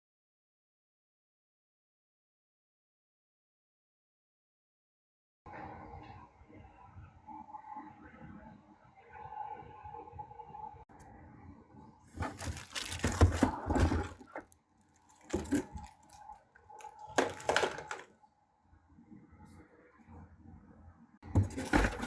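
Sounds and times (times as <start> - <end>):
packaging crackling and crinkling: 12.1 - 18.1.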